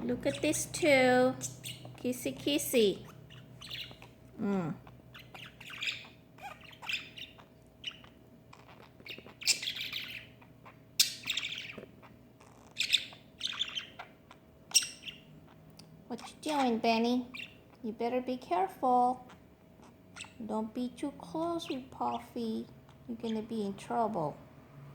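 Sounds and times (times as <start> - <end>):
parrots squawking and chirping: 0.3 - 2.0, 2.9 - 17.8, 19.2 - 20.4.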